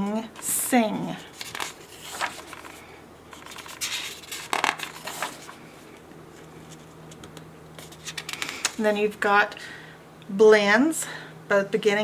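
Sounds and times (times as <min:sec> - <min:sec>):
paper pages rustling: 0:00.4 - 0:09.1.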